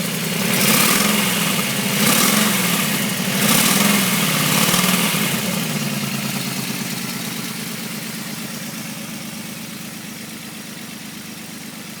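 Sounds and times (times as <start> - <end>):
car engine settling to idle: 0.0 - 12.0.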